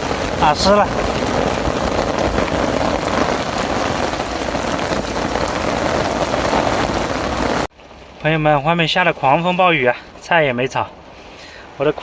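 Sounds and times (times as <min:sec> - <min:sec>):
heavy rain pouring: 0:00.0 - 0:08.1.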